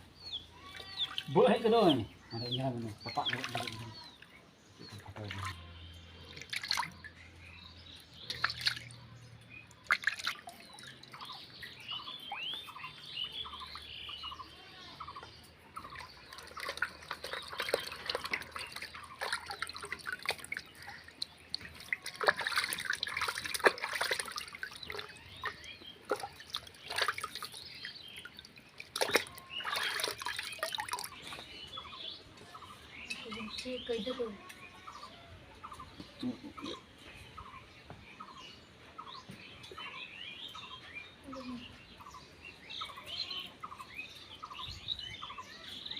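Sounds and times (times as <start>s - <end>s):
birds chirping: 0.0s - 45.9s
water splashing and dripping: 0.6s - 13.9s, 15.2s - 31.8s.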